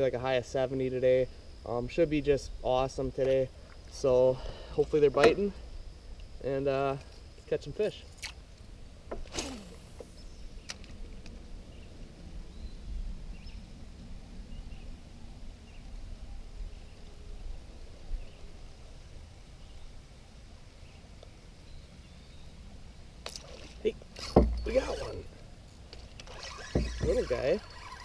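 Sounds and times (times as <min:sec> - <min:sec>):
faint bird chirps: 0:11.7 - 0:13.7.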